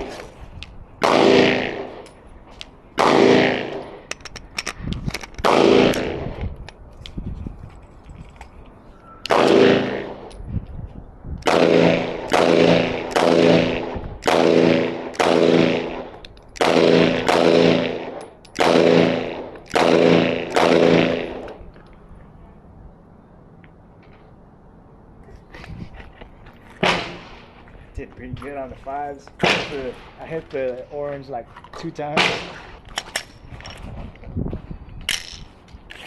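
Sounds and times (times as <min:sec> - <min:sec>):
gunshots with echo: 0:01.0 - 0:02.0, 0:03.0 - 0:04.0, 0:05.4 - 0:06.4, 0:09.3 - 0:10.3, 0:11.4 - 0:21.6, 0:26.8 - 0:27.6, 0:29.4 - 0:30.4, 0:32.2 - 0:32.6.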